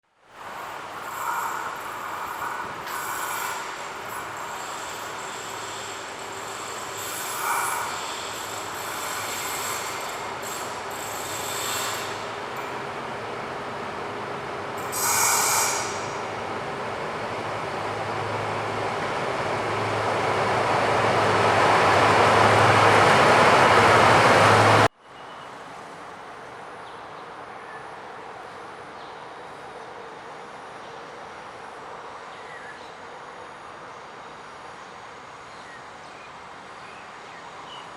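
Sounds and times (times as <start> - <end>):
train rolling: 0.4 - 24.9
high-pitched brake squeal: 1.0 - 12.4, 14.8 - 16.3.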